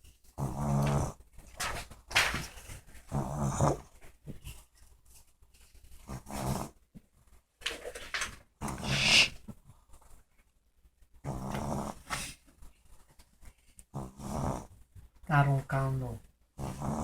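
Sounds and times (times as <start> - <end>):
rasping snores: 0.4 - 1.2, 3.1 - 3.8, 6.1 - 6.8, 8.6 - 9.4, 11.3 - 12.4, 13.9 - 14.7, 16.6 - 17.0.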